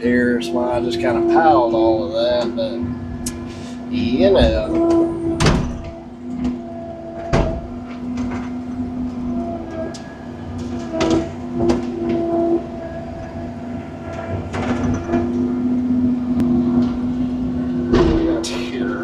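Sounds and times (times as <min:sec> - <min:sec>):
diesel machine droning: 0:00.0 - 0:19.0
machine whine: 0:00.0 - 0:19.0
wood and steel knocks: 0:17.9 - 0:18.4.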